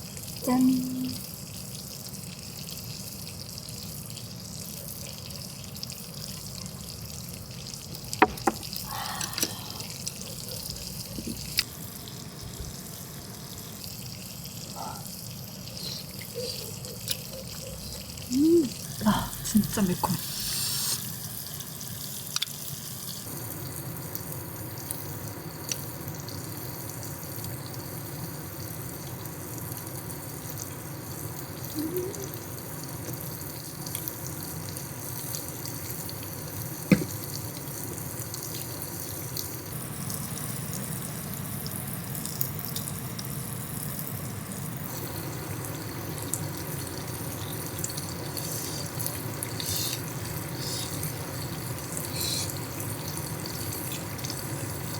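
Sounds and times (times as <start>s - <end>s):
stream water flowing: 8.0s - 10.0s.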